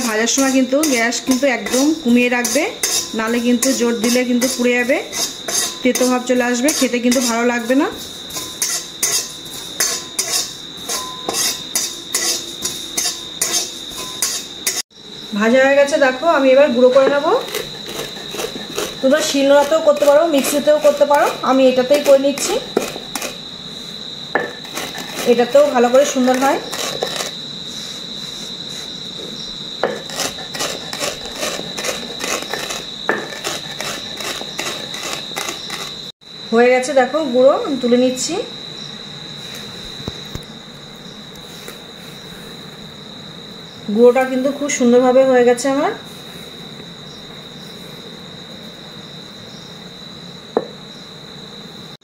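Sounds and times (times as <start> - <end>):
seeds being ground by hand: 0.0 - 14.8, 17.0 - 23.4, 24.6 - 29.0, 30.0 - 36.1
spatula scraping a pan: 0.0 - 14.8, 16.9 - 23.4, 24.4 - 36.1.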